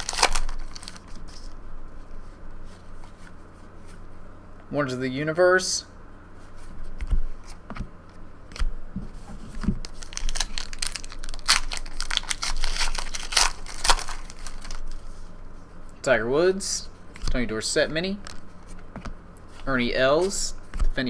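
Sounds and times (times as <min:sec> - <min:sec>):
foil wrapper crinkling and tearing: 0:00.0 - 0:01.5, 0:09.8 - 0:15.2, 0:18.2 - 0:18.7.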